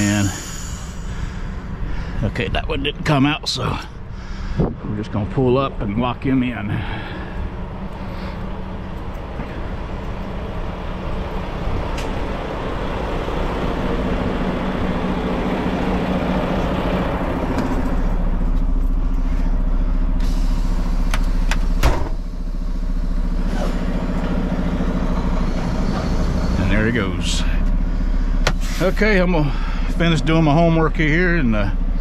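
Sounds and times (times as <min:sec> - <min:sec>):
diesel truck engine running: 0:00.0 - 0:32.0
loud metal clunk: 0:21.8 - 0:22.2.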